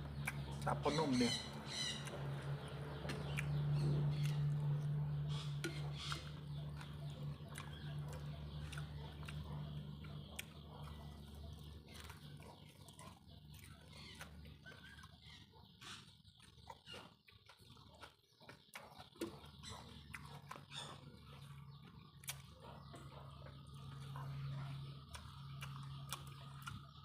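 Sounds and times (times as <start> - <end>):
birds calling: 0.0 - 27.0
low hum: 1.4 - 12.4, 19.8 - 27.0.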